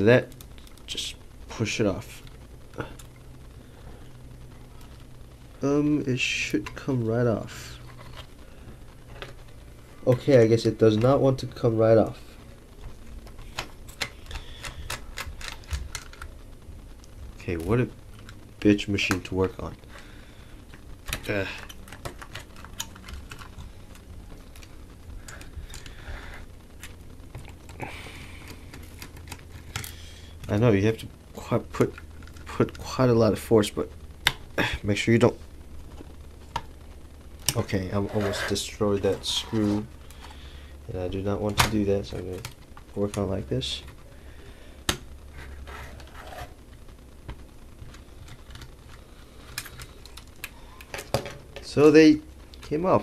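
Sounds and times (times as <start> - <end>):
screwdriver scraping and rustling: 37.5 - 40.3, 45.3 - 46.6.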